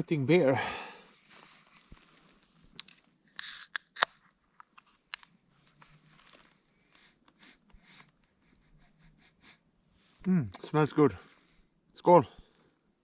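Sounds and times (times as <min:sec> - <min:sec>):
beer can hiss of gas: 0:03.4 - 0:03.8.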